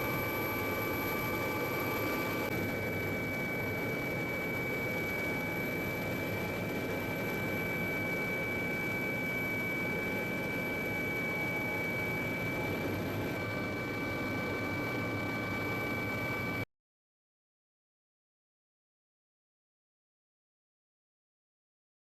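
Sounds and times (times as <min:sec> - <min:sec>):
high whine: 0:00.0 - 0:06.0.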